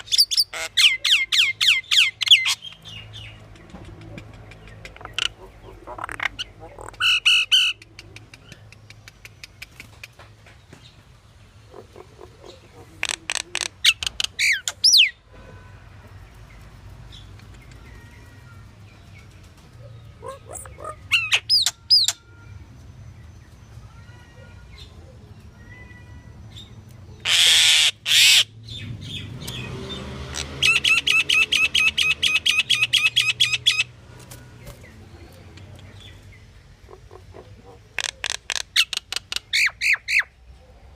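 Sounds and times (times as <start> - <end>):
bird harsh squawks: 0.0 - 2.8, 5.0 - 7.8, 20.2 - 22.2, 27.2 - 28.5, 36.9 - 40.4
bird chattering calls: 0.0 - 10.2, 11.6 - 15.2, 20.2 - 22.2, 30.3 - 33.9, 34.6 - 40.4.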